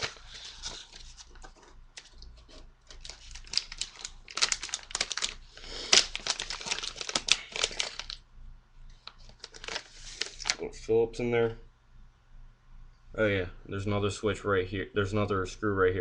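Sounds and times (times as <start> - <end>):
scrapes and crinkles of parts: 0.0 - 5.3.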